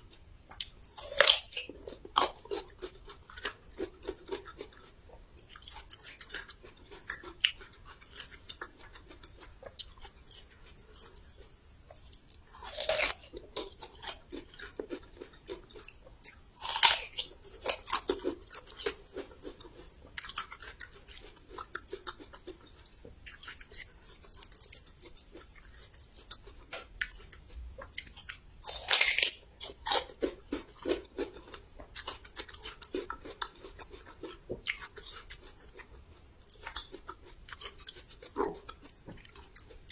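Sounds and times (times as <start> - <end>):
crunchy chewing: 0.0 - 39.9
crisp bites into ginger: 28.6 - 30.4.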